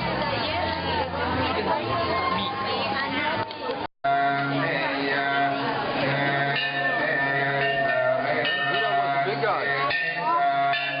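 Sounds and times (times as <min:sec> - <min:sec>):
held notes music: 0:04.1 - 0:11.0.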